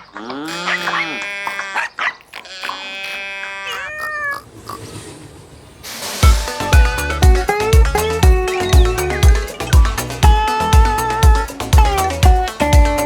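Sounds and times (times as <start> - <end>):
cartoon animal calls sliding in pitch: 0.2 - 4.9.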